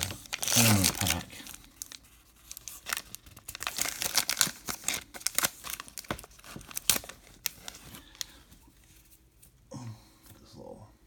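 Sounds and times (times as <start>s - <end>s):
plastic wrapper crinkling: 0.0s - 8.4s.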